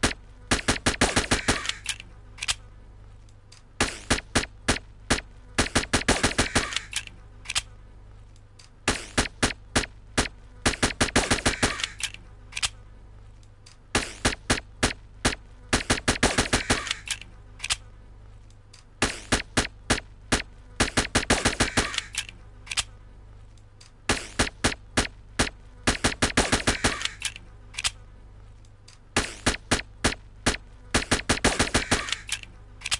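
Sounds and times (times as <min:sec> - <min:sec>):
suppressed pistol shots: 0:00.0 - 0:02.0, 0:03.8 - 0:07.0, 0:08.9 - 0:12.1, 0:13.9 - 0:17.1, 0:24.1 - 0:27.3, 0:29.2 - 0:32.4
low steady hum: 0:00.0 - 0:32.9.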